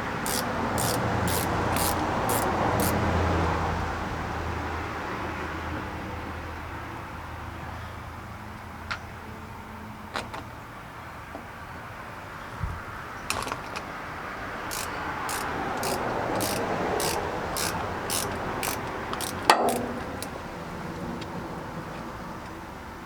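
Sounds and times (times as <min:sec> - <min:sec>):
light rasping: 0:00.0 - 0:03.0, 0:14.7 - 0:20.4
ratchet wrench clicking: 0:00.0 - 0:03.0, 0:14.6 - 0:20.4.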